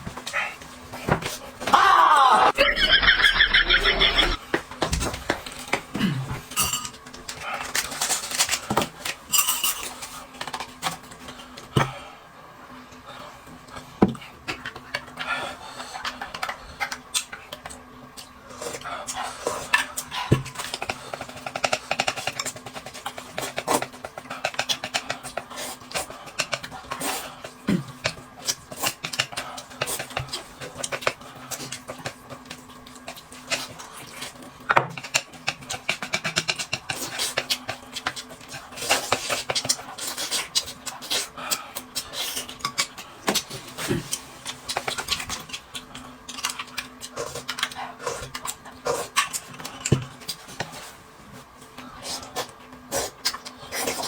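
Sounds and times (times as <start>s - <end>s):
people chewing: 0.1s - 4.4s, 5.0s - 9.3s, 13.0s - 54.0s
utensils clicking against dishes: 9.3s - 10.2s.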